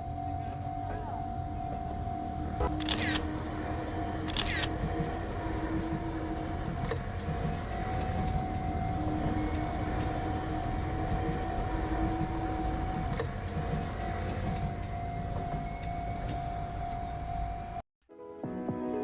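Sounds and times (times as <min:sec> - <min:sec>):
camera shutter: 0:02.6 - 0:03.2, 0:04.3 - 0:04.7.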